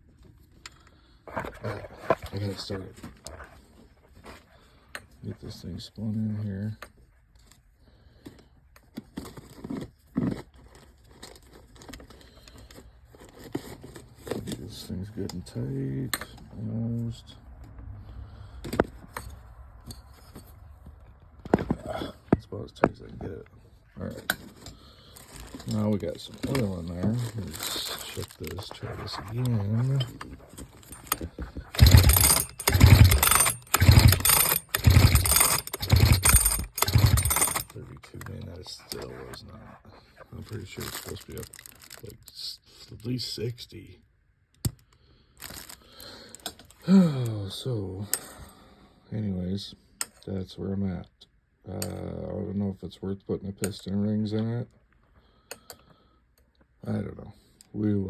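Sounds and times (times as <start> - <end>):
chainsaw pull-starter cranking: 24.2 - 39.4, 40.5 - 42.1, 45.4 - 47.3
metal fitting clicks and scrapes: 25.5 - 39.4.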